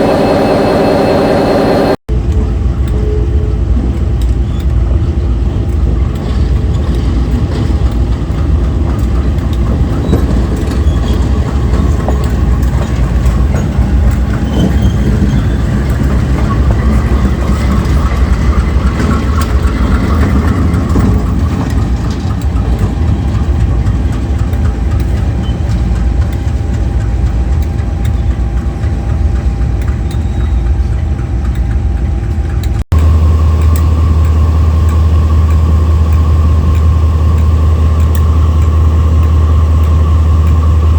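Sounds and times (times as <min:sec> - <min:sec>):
high whine: 0:00.0 - 0:03.8, 0:31.6 - 0:40.9
diesel locomotive engines running: 0:00.0 - 0:40.9.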